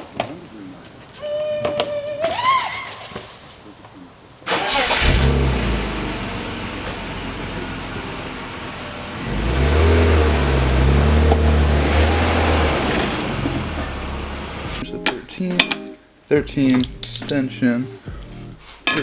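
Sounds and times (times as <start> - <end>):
car engine idling and revving: 4.7 - 14.8.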